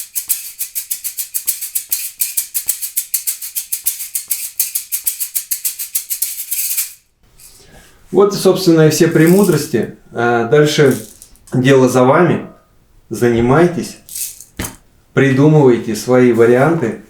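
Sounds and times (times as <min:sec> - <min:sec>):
shaker groove: 0:00.0 - 0:07.7, 0:09.1 - 0:09.8, 0:10.9 - 0:11.6, 0:14.0 - 0:14.8.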